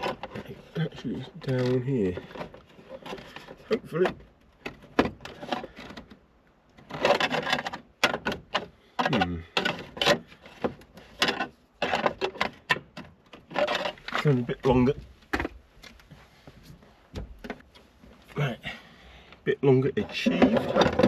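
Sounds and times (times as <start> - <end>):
tools clicking and knocking on metal: 20.1 - 21.0.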